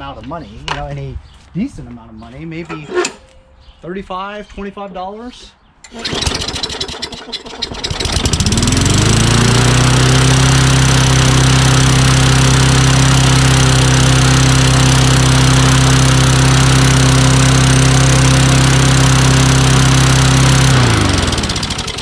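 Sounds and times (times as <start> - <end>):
lawn mower engine running: 5.8 - 22.0.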